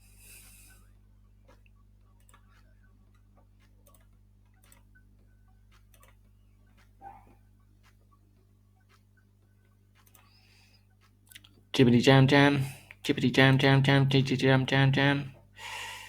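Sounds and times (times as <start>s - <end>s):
low electrical hum: 0.0s - 16.0s
computer mouse clicks: 1.4s - 7.0s, 9.9s - 10.4s.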